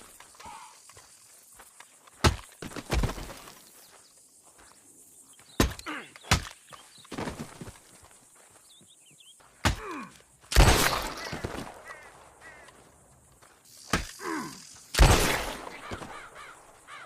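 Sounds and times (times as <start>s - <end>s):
hits and thuds of blows: 2.2s - 3.2s, 5.6s - 6.6s, 9.6s - 11.7s.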